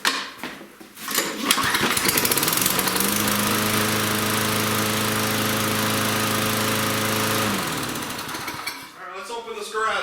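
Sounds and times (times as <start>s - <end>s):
lawn mower engine starting: 1.1s - 9.0s.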